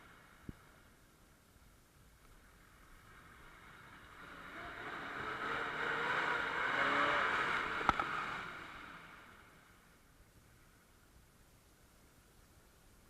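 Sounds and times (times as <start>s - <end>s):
off-road vehicle passing: 2.3s - 10.6s.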